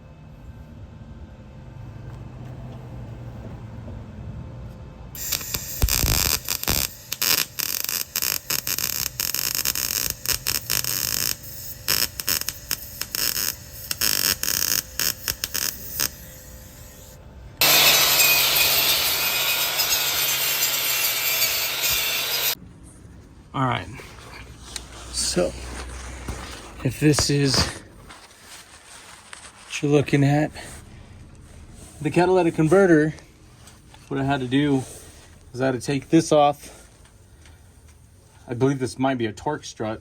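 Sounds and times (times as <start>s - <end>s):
harsh scraping tool on metal: 5.2s - 22.6s.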